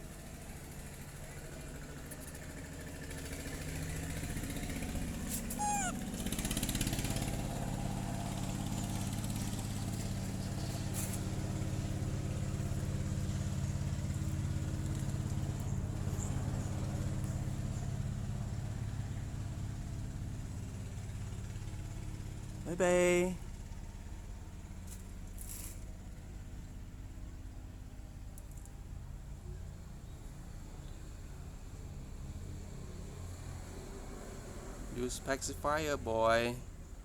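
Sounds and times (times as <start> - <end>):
high squeak: 5.5 - 6.0.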